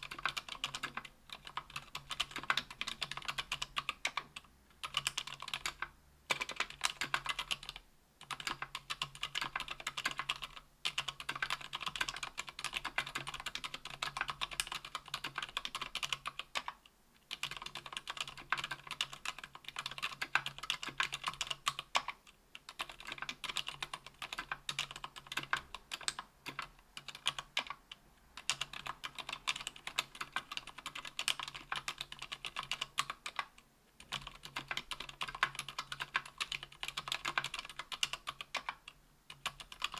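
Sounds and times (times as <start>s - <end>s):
typing on keyboard: 0.0s - 39.9s.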